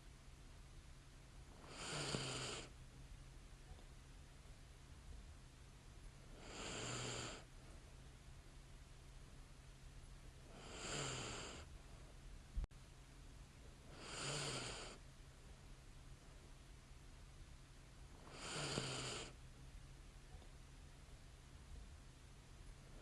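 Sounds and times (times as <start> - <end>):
steady low hum: 0.0 - 18.5, 19.2 - 23.0
woman breathing and snoring: 1.6 - 2.8, 6.3 - 7.5, 10.4 - 11.9, 13.8 - 15.0, 18.2 - 19.4.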